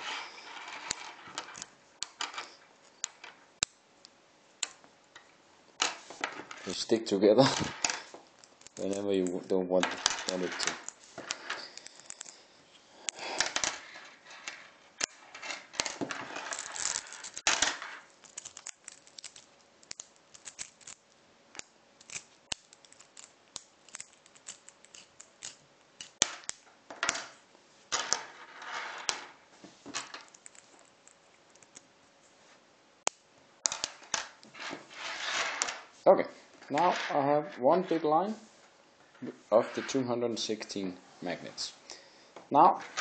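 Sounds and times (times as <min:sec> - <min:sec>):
magnetic metal balls clicking: 0:00.8 - 0:05.3, 0:07.9 - 0:12.4, 0:18.2 - 0:26.6.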